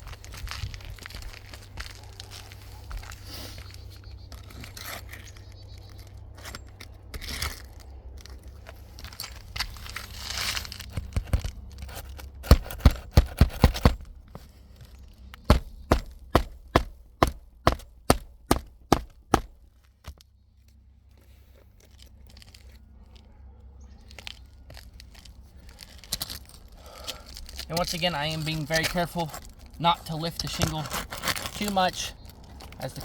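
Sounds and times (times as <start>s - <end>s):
rustle: 0.0s - 12.4s
hammer driving nails into shingles: 12.0s - 14.1s, 15.5s - 19.6s.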